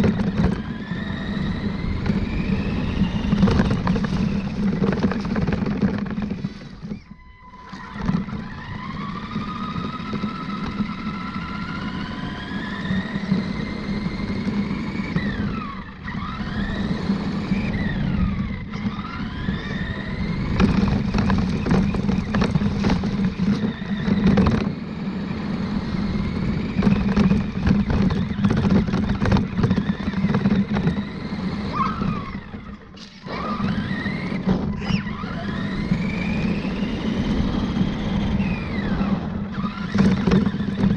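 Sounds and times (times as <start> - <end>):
rc truck motor whining: 0.0 - 40.9
knocks and rattles: 3.2 - 6.9, 20.5 - 24.8, 26.8 - 31.1.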